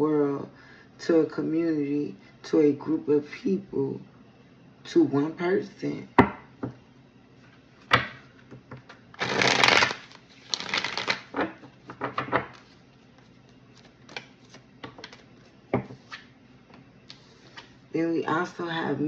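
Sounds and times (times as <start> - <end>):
cards being shuffled: 8.9 - 16.3.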